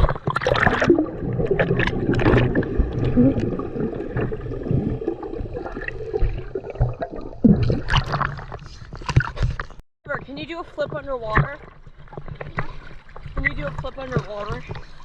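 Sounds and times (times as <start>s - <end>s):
water sloshing and splashing: 0.0s - 15.0s.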